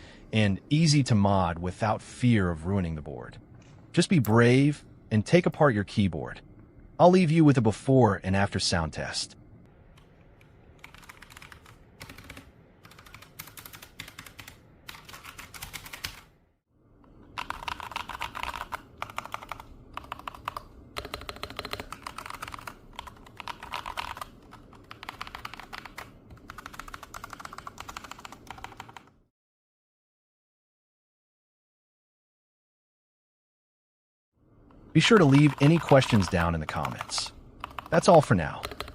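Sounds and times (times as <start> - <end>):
typing on mechanical keyboard: 10.8 - 16.3, 17.4 - 29.1, 35.0 - 38.9.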